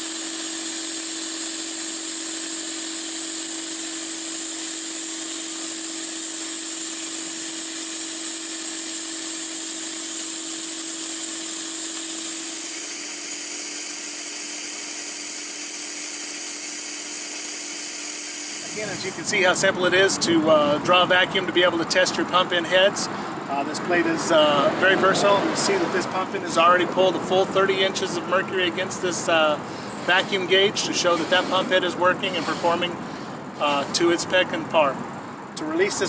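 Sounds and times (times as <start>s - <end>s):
strong hiss of suction: 0.0s - 19.5s, 29.7s - 33.0s
pump humming: 0.0s - 20.2s, 28.8s - 34.3s.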